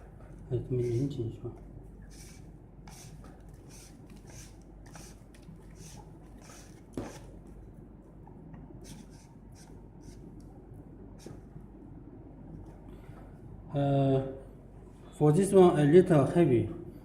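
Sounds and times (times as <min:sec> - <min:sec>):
soft rasping strokes: 0:00.6 - 0:01.3, 0:02.0 - 0:07.3.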